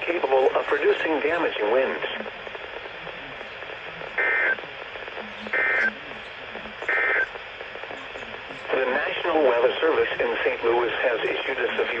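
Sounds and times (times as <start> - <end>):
faint radio hiss: 0.0 - 12.0
digital data tone bursts: 5.3 - 7.4.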